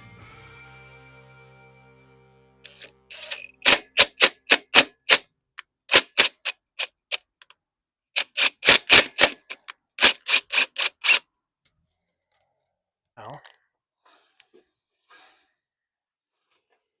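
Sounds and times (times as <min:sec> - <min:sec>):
sharp mechanical clicking: 0:02.7 - 0:05.2, 0:05.9 - 0:07.5, 0:08.2 - 0:11.2.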